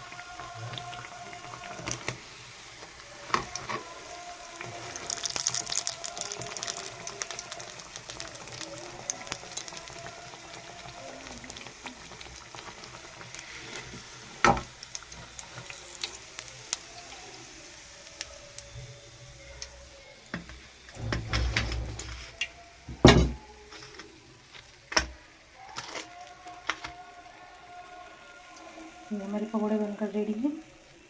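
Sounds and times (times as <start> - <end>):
frying in hot oil: 0.0 - 31.0
utensil scraping pan: 21.0 - 22.4.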